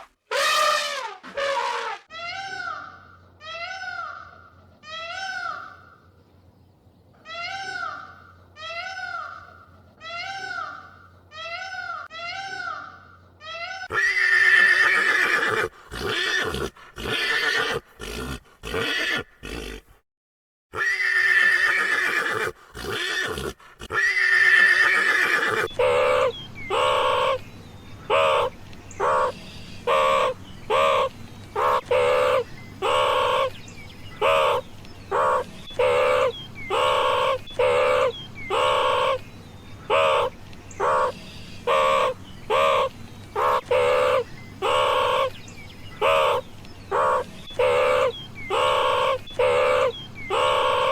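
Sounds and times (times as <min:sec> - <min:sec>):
short evenly spaced animal calls: 0:07.2 - 0:19.9, 0:20.8 - 0:50.9
horse whinnying: 0:13.8 - 0:20.0, 0:20.8 - 0:26.3.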